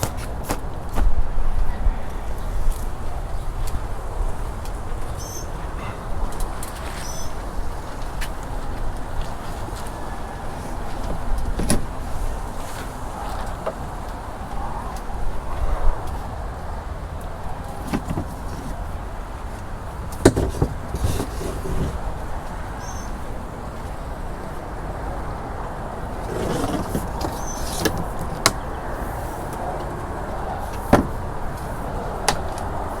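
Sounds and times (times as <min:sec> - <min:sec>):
parts knocking and clattering: 0:17.7 - 0:19.0, 0:20.0 - 0:22.1, 0:26.2 - 0:28.7, 0:30.6 - 0:32.7.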